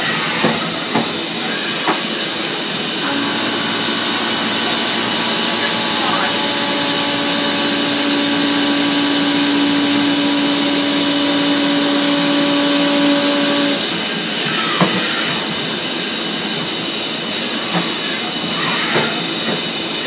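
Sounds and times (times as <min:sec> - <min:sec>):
milling cut hum: 0:03.0 - 0:13.8
milling hiss: 0:03.0 - 0:13.8.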